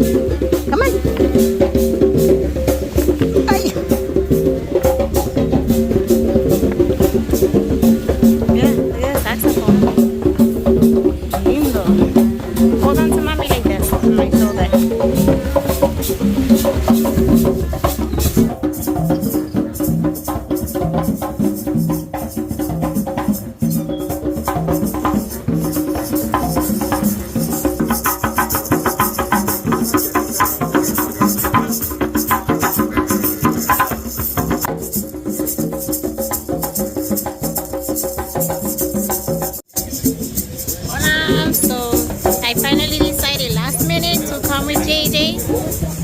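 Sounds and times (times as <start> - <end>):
hand percussion clicks and shakes: 0.0 - 46.0
saxophone melody: 3.4 - 3.9
person's voice: 3.5 - 3.8, 8.5 - 9.9, 12.8 - 14.9, 40.9 - 45.4
held pitched notes: 39.7 - 46.0.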